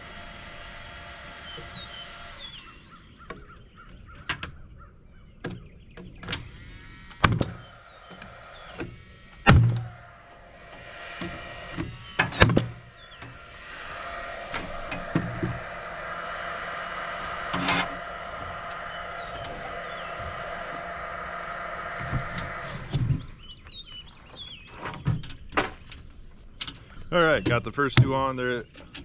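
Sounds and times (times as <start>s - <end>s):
steady background hum: 0.0s - 4.1s, 6.2s - 23.5s.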